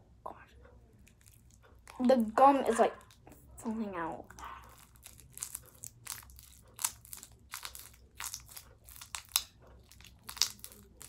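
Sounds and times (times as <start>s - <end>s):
slime crackling and popping: 4.3s - 11.0s.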